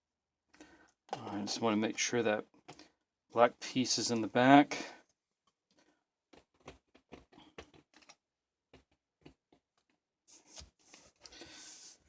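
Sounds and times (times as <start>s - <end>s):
small clicks and taps: 6.3s - 11.4s.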